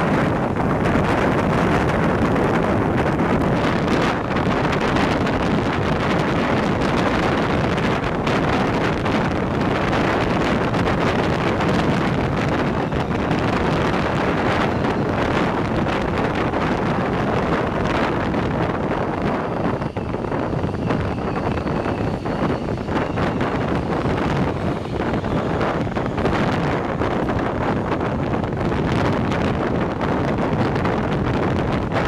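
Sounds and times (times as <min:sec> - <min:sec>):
moving train rumble: 0:00.0 - 0:32.0
wind buffeting microphone: 0:00.0 - 0:32.0.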